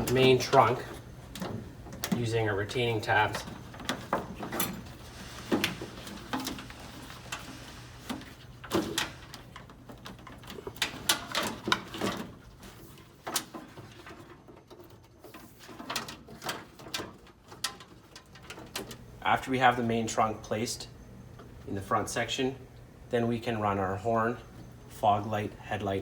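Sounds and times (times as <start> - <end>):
faint steady hum: 0.0 - 14.1, 18.4 - 26.0
wiring harness clicks and rustles: 0.0 - 19.4.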